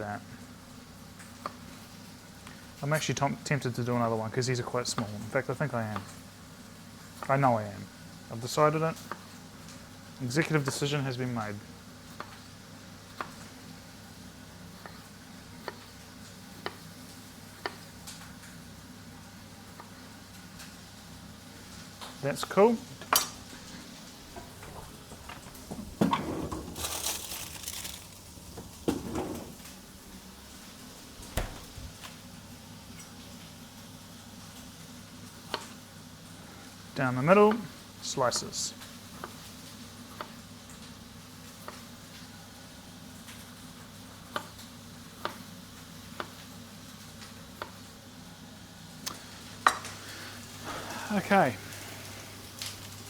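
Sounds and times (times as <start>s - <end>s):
crinkling rustle: 23.4s - 32.2s, 50.1s - 53.0s.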